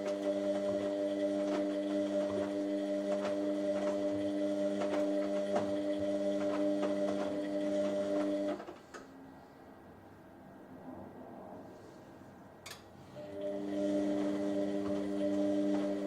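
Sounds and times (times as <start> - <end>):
washing machine motor hum: 0.0 - 8.8, 13.0 - 16.0.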